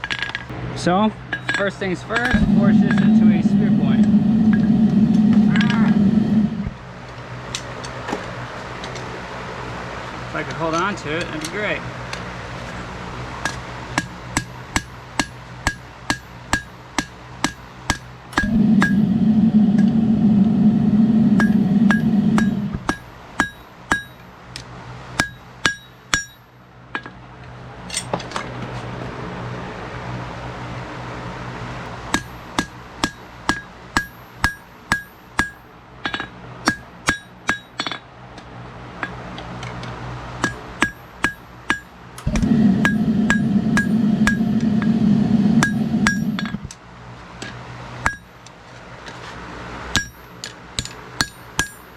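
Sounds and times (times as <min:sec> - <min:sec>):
steady hum: 0:02.1 - 0:07.1, 0:18.3 - 0:23.7, 0:40.8 - 0:46.8
hammer striking hot steel: 0:02.2 - 0:06.8, 0:13.4 - 0:24.2, 0:25.2 - 0:26.5, 0:32.1 - 0:38.0, 0:40.4 - 0:46.8, 0:48.0 - 0:48.3, 0:49.9 - 0:51.9.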